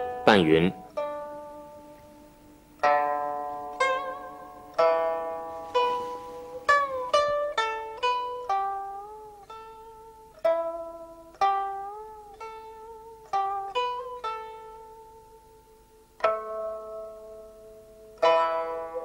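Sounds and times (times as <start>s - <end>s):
plucked string instrument melody: 0.0s - 19.0s.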